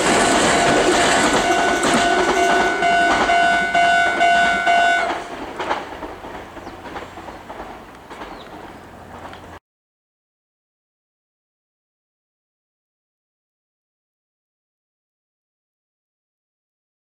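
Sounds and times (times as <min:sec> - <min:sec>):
level-crossing warning bell: 0:00.0 - 0:06.0
train wheels clacking over joints: 0:00.0 - 0:09.6.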